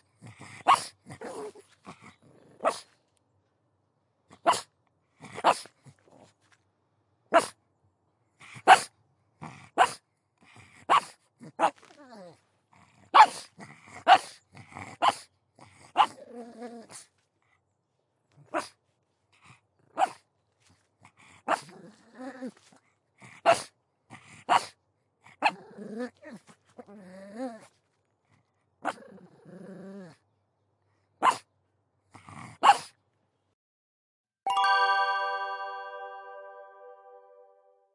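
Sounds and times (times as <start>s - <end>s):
dog barking: 4.4s - 4.7s, 8.7s - 8.9s, 9.8s - 10.0s, 13.1s - 13.4s, 31.2s - 31.4s, 32.6s - 32.9s
dog whining and grumbling: 25.4s - 27.8s.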